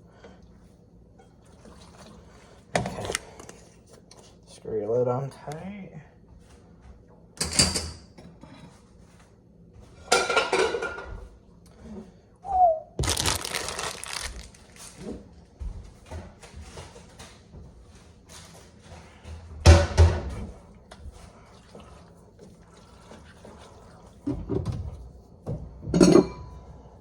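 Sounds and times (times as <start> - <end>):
containers and utensils clattering: 10.1 - 11.1.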